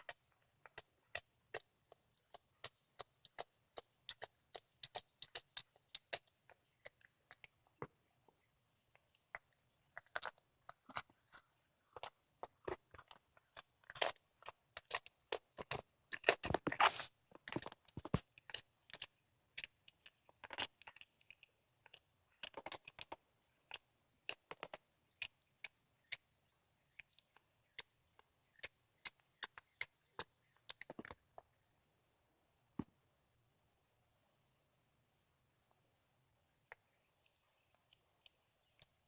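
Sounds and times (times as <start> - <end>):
cat chewing and crunching: 0.0 - 7.8, 9.0 - 31.5.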